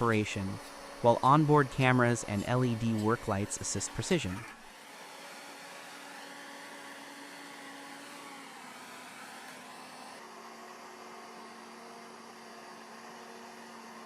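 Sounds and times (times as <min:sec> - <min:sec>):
harvester machinery humming: 0:00.0 - 0:04.7.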